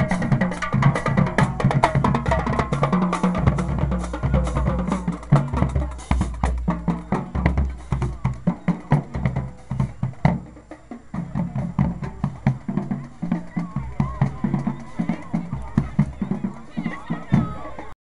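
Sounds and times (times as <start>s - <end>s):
drumline beating rapid strokes: 0.0s - 18.0s.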